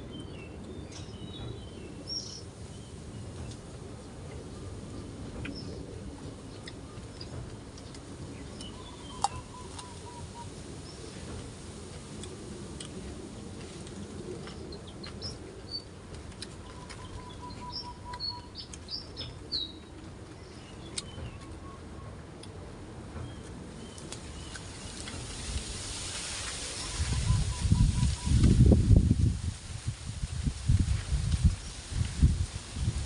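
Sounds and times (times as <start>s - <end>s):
birds chirping: 4.6s - 11.3s, 14.4s - 22.3s
wind rush on microphone: 24.3s - 33.0s.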